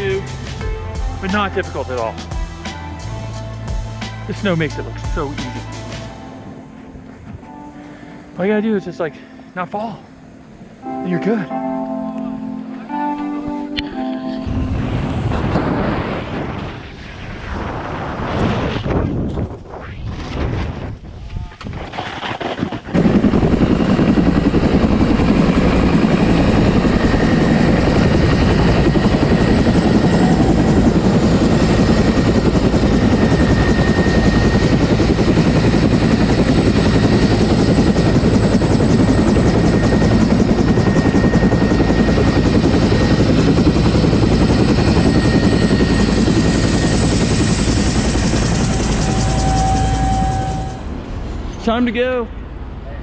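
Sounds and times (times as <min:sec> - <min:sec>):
helicopter rumble with turbine whine: 0:00.0 - 0:11.0, 0:12.8 - 0:21.2, 0:21.8 - 0:52.9
wind buffeting microphone: 0:14.5 - 0:51.5.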